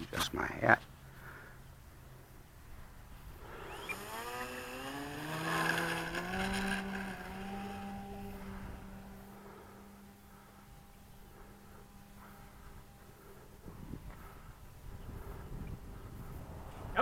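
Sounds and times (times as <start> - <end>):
model plane motor whine: 3.4 - 15.9.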